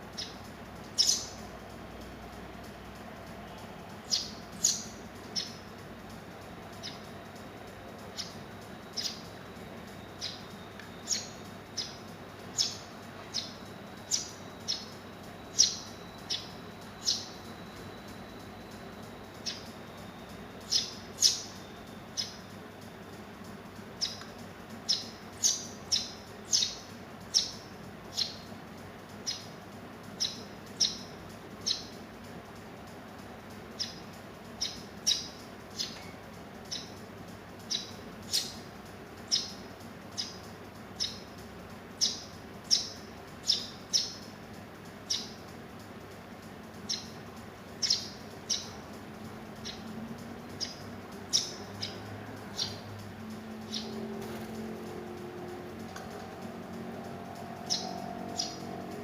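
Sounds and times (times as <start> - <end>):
sparrows chirping: 0.0 - 59.0.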